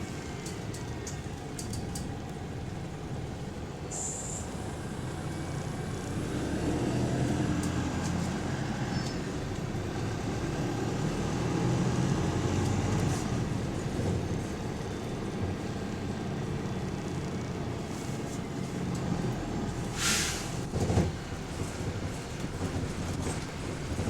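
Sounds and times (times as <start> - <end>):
bus engine rumbling: 0.0 - 24.0
air hiss: 20.0 - 20.6.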